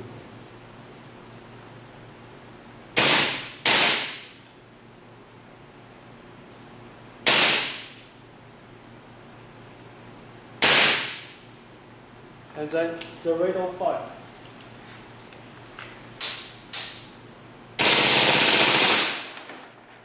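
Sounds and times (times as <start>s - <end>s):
airsoft rifle shots: 3.0s - 4.4s, 7.2s - 8.0s, 10.6s - 11.3s, 17.8s - 19.5s.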